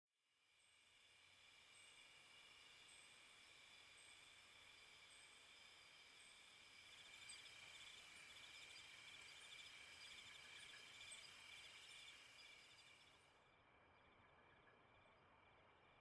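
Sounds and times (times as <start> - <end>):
crickets chirping: 2.3 - 13.2.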